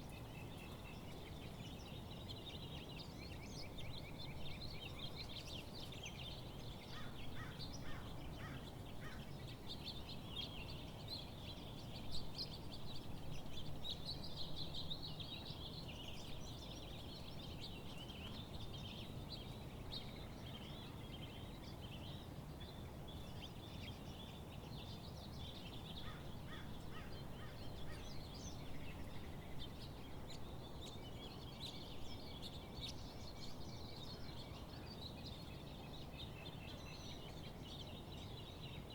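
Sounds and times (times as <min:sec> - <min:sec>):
many birds singing and chirping: 0:00.0 - 0:38.9.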